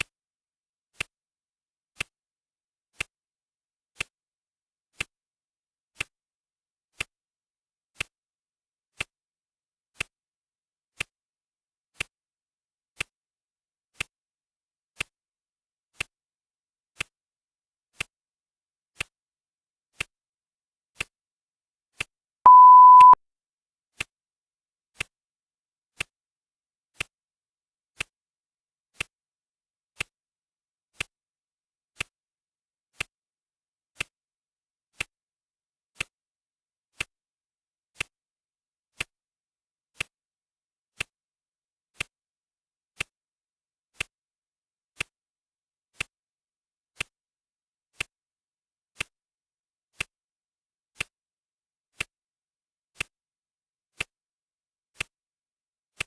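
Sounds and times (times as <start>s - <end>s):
high timer beep: 22.5s - 23.2s.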